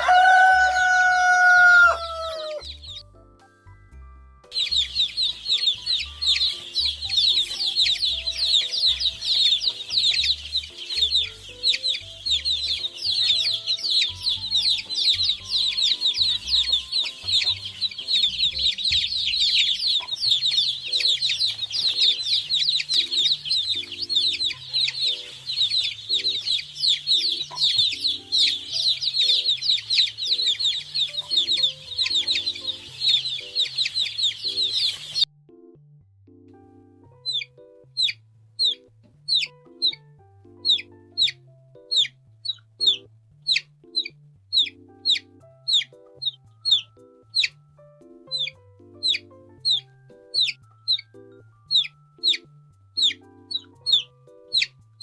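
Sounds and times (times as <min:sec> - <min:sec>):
chicks peeping: 0:00.0 - 0:03.1, 0:04.5 - 0:35.3, 0:37.2 - 0:55.0
faint low music: 0:00.0 - 0:55.0.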